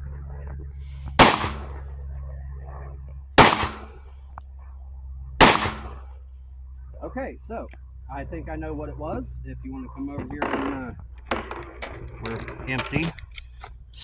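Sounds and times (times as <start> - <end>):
revolver gunshots with echo: 1.2 - 1.8, 3.4 - 4.0, 5.4 - 6.1.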